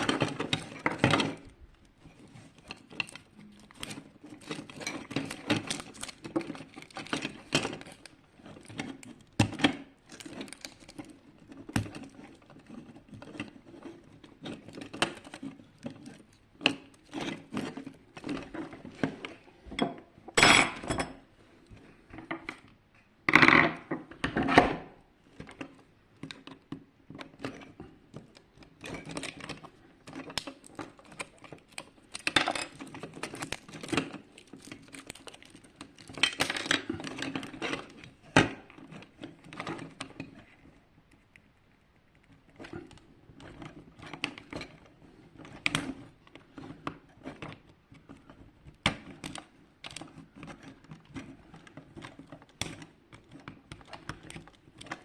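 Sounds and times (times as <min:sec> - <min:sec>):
plastic and metal parts clicking: 0:25.3 - 0:41.4, 0:42.1 - 0:55.0.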